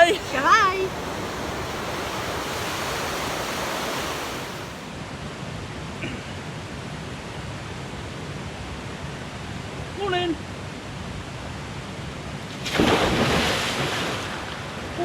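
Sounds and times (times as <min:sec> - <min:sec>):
waterfall rushing: 0:00.0 - 0:04.9.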